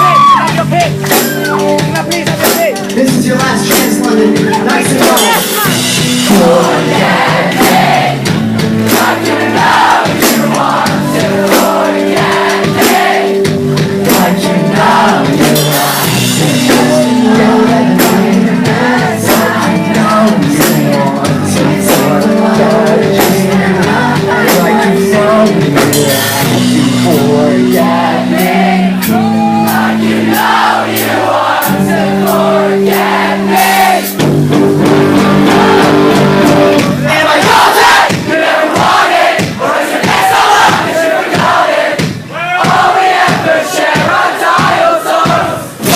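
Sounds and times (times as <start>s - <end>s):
person singing: 0.0s - 8.2s, 14.0s - 30.0s
guitar chords: 0.0s - 39.0s
drum beat: 0.0s - 45.9s.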